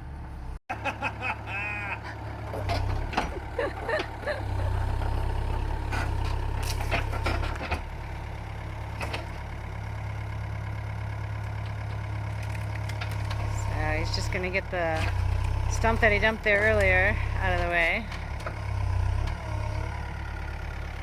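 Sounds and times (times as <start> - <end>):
heavy machine engine running: 0.0 - 21.0
clanks and knocks: 2.5 - 4.2, 5.8 - 8.0.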